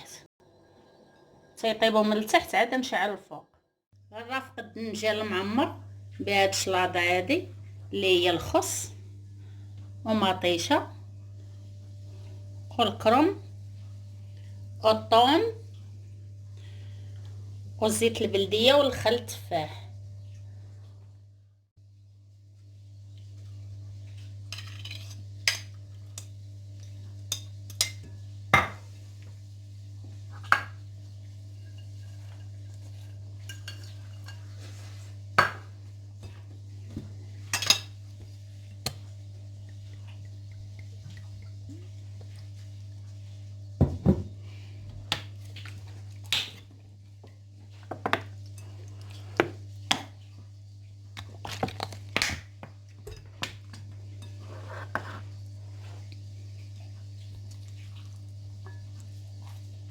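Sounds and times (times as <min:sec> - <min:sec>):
low hum: 0:05.1 - 0:18.6
dishes and utensils clinking: 0:31.6 - 0:34.8.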